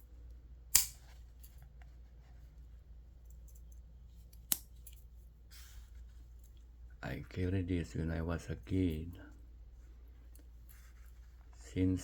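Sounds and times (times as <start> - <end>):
low room hum: 0.0 - 12.0
pocket knife click: 0.7 - 1.0.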